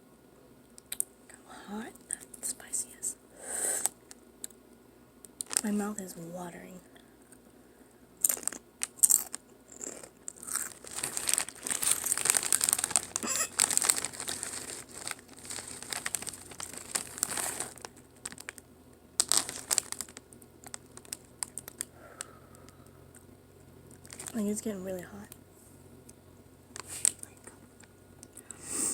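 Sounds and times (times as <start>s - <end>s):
chip bag crinkling: 5.4s - 5.7s, 8.2s - 21.9s, 23.9s - 24.4s.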